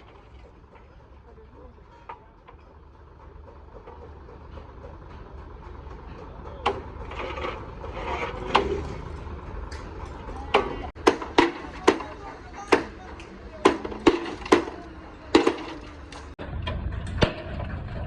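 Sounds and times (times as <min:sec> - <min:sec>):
clatter: 0:00.0 - 0:12.2, 0:13.7 - 0:18.0
truck engine rumbling: 0:00.0 - 0:18.0
sharp knocks: 0:10.6 - 0:13.0.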